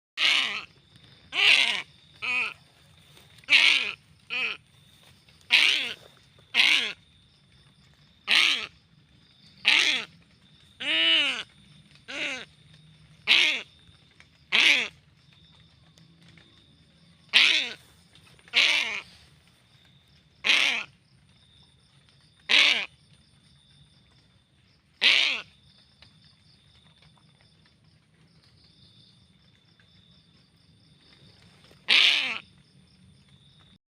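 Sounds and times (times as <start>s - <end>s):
bird alarm calls: 1.3s - 2.6s, 3.4s - 4.6s, 5.5s - 7.0s, 17.3s - 17.8s, 18.5s - 19.2s, 31.9s - 32.4s.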